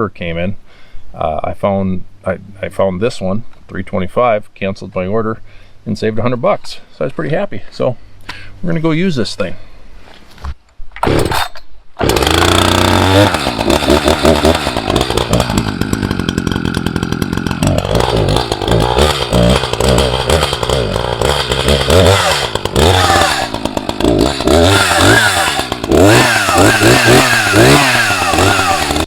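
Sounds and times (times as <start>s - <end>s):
chainsaw revving: 11.0s - 29.0s.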